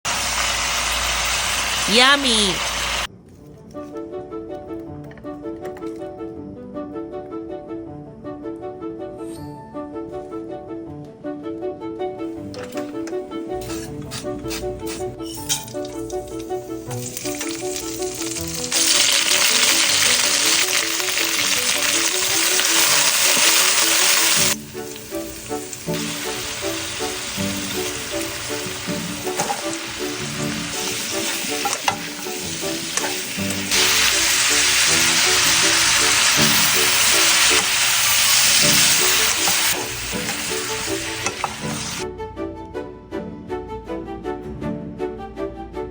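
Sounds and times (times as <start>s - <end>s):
food sizzling in hot oil: 0.1s - 3.1s, 13.6s - 42.0s
background music: 1.9s - 45.9s.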